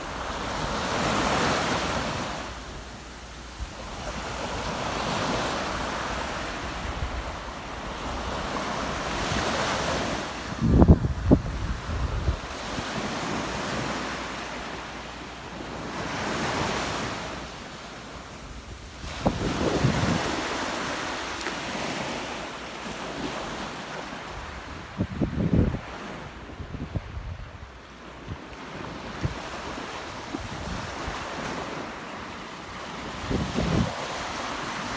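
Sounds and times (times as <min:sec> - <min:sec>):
ocean waves breaking: 0:00.0 - 0:10.6, 0:11.2 - 0:24.7
wind buffeting microphone: 0:10.4 - 0:12.9, 0:18.6 - 0:20.6, 0:24.4 - 0:28.4, 0:33.1 - 0:34.9.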